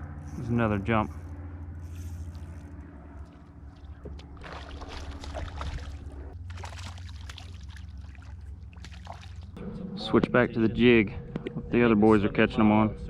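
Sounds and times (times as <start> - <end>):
boat motor humming: 0.0 - 12.1
water splashing: 3.7 - 9.6.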